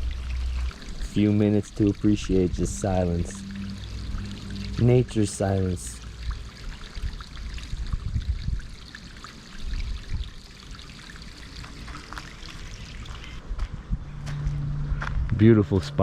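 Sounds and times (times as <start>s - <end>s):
low rumble: 0.0s - 8.7s, 13.4s - 16.0s
stream trickling over rocks: 0.0s - 13.4s.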